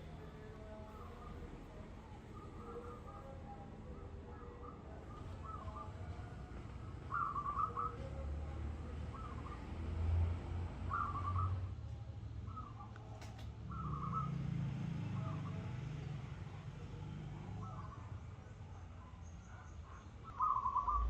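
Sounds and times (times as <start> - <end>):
bird whistled calls: 20.3 - 21.0.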